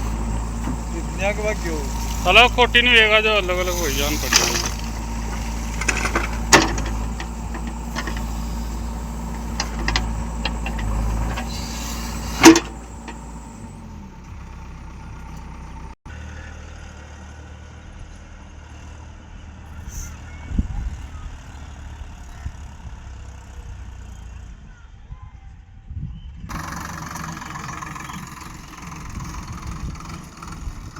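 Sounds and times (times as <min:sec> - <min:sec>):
low hum: 0:00.0 - 0:15.5
vehicle engine running: 0:00.0 - 0:24.8, 0:26.5 - 0:30.9
knocking: 0:04.2 - 0:08.4.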